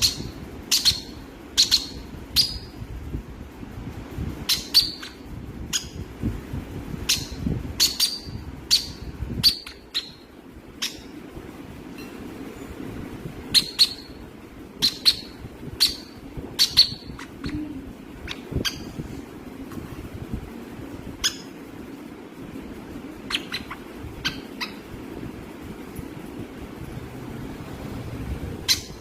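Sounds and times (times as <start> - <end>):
parrot squawking: 13.6 - 14.2, 14.8 - 17.6, 18.2 - 18.9, 23.2 - 24.8.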